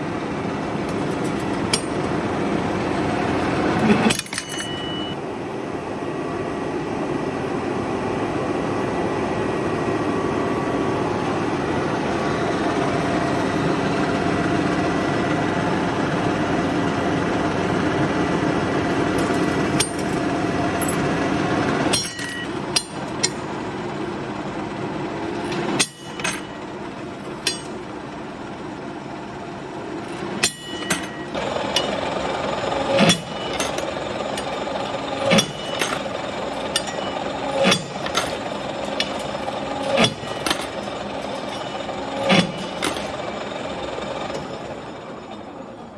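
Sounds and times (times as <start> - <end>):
lathe running: 0.0 - 5.2, 10.3 - 45.9
sharp metallic clicks and clanks: 0.9 - 2.2, 3.8 - 5.1, 19.2 - 21.2, 21.9 - 23.5, 25.4 - 26.6, 27.2 - 27.9, 30.0 - 43.5.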